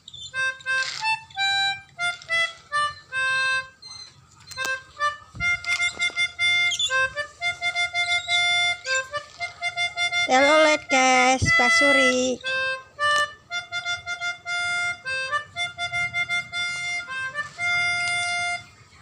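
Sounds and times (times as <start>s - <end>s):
multi-tone bus horn melody: 4.8s - 18.8s.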